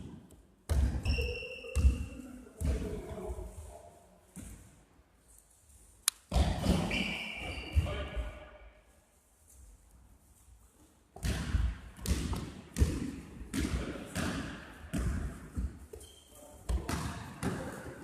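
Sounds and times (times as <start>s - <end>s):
basketball bouncing on gym floor: 0.7s - 2.0s, 11.2s - 16.1s, 16.7s - 17.9s.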